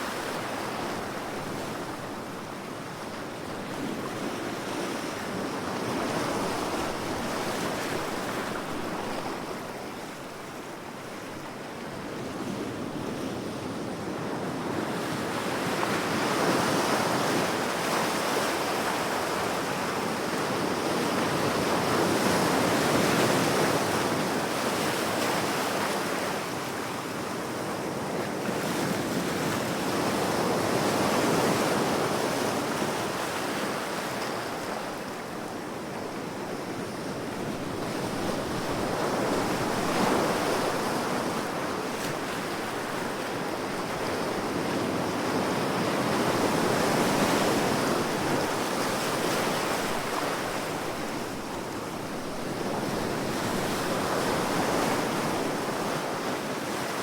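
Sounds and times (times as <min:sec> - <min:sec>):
waves breaking on shore: 0:28.5 - 0:57.0.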